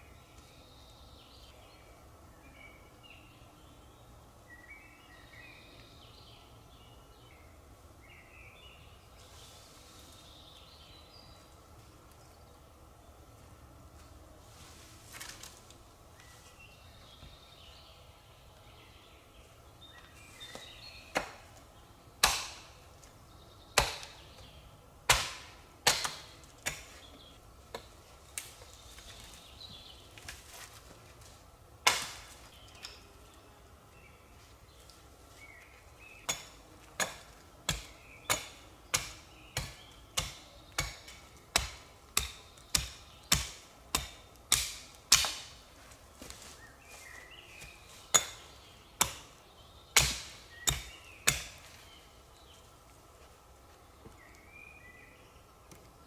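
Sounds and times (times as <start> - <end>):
wood being chopped: 20.5 - 21.4, 22.2 - 22.7, 23.8 - 24.2, 25.1 - 27.0, 31.8 - 32.4, 36.3 - 45.5, 49.0 - 49.3, 50.0 - 51.6.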